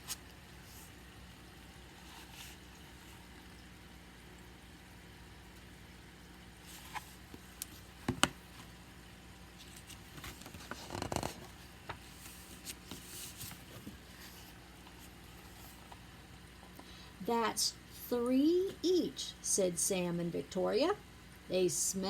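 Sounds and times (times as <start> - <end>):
faint steady hum: 0.0 - 22.0
paper pages rustling: 9.6 - 15.9.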